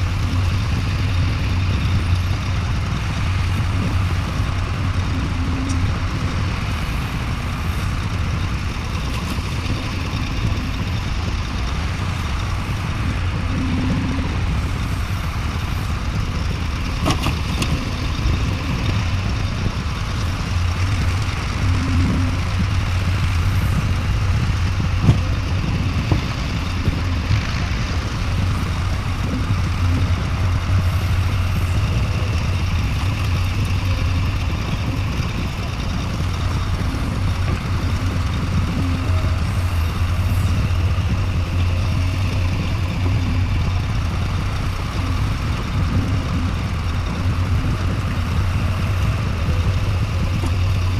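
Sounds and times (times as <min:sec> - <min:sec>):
heavy diesel engine running: 0:00.0 - 0:50.9.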